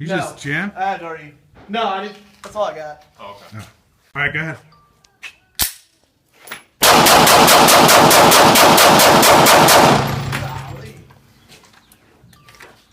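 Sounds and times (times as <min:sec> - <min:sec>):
gunshots: 0:06.8 - 0:10.8.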